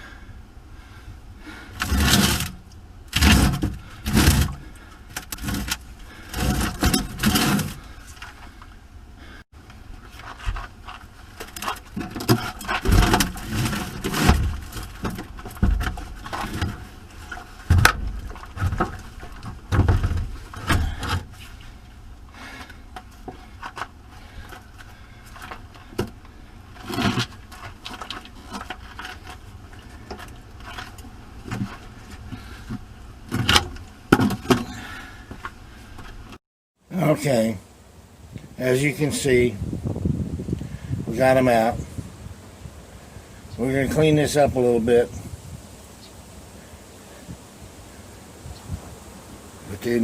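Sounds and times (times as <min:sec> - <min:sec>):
batteries scraping: 0:10.0 - 0:36.4.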